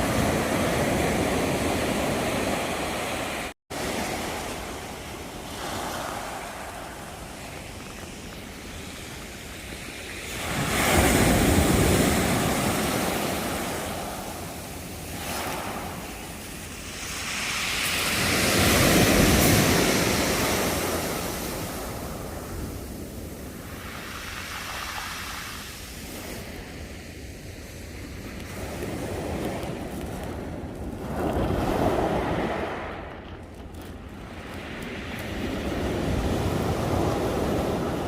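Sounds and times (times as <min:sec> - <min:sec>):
sea waves breaking on shore: 0:00.0 - 0:38.0
wind on microphone: 0:00.0 - 0:38.0.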